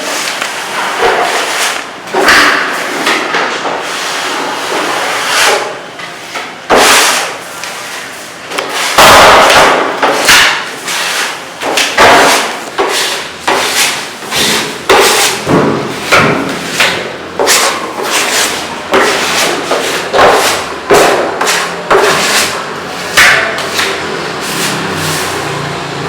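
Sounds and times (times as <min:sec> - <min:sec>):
heavy construction knocks: 0:14.4 - 0:17.0.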